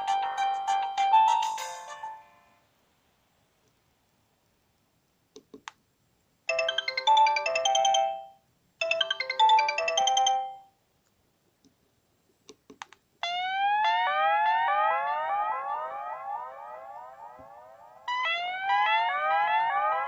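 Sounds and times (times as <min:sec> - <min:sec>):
polyphonic ringtone melody: 0:00.0 - 0:02.4, 0:06.5 - 0:10.7, 0:13.2 - 0:17.3, 0:18.1 - 0:20.0
ringtone of rising gliding tones: 0:00.0 - 0:02.6, 0:06.5 - 0:10.7, 0:13.2 - 0:20.0.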